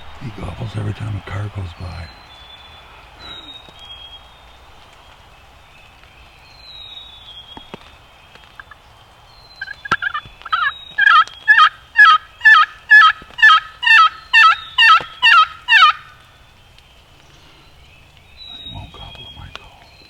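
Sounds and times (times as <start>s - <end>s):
turkey yelping: 8.4s - 8.8s, 9.6s - 17.7s.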